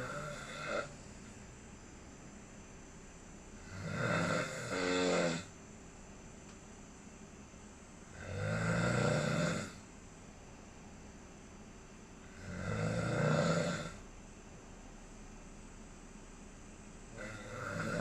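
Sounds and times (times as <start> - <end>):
person snoring: 0.0 - 1.0, 3.6 - 5.5, 8.2 - 9.8, 12.3 - 14.0, 17.2 - 18.0.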